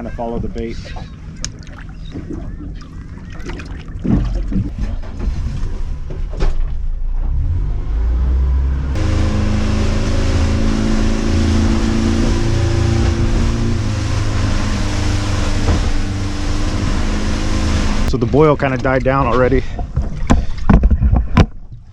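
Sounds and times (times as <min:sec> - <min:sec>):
outboard boat engine running: 0:00.0 - 0:04.8, 0:09.0 - 0:21.6.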